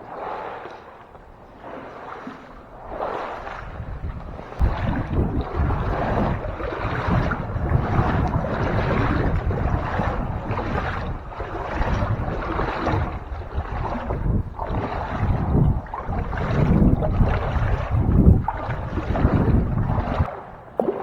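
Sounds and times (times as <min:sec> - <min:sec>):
boots sloshing through water: 0:00.0 - 0:21.0
low microphone rumble: 0:03.7 - 0:20.3.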